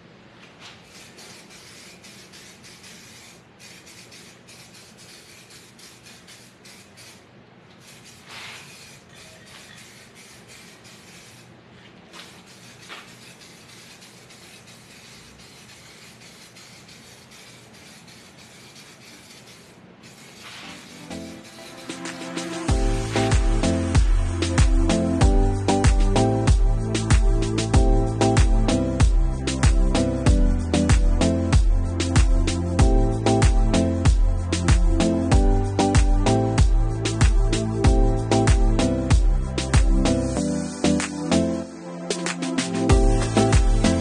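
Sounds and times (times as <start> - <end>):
aerosol can spraying hiss: 7.8 - 11.5, 12.2 - 25.8.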